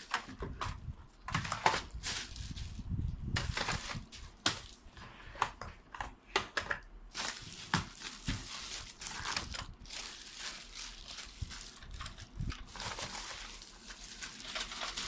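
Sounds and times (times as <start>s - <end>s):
plastic packaging crinkling: 0.0s - 4.9s, 7.1s - 15.0s
plastic clicks and knocks: 5.4s - 6.9s.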